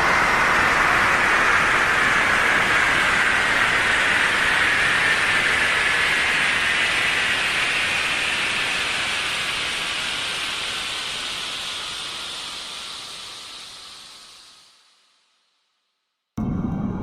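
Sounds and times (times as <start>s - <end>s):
airplane taking off: 16.4s - 17.0s.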